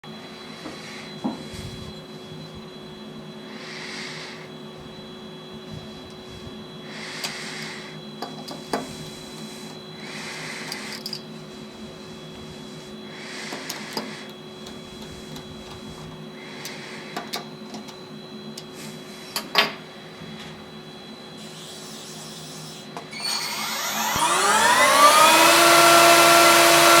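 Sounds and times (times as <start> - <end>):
cutter hissing: 23.1 - 27.0
milling machine humming: 23.1 - 27.0.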